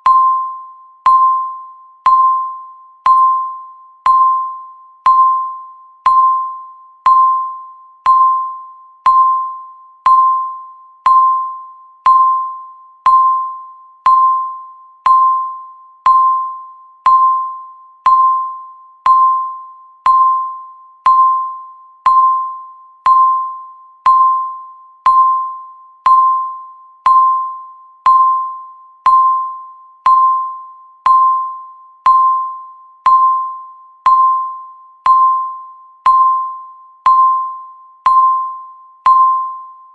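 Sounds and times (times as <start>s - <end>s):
timer beeps: 0.0s - 39.9s.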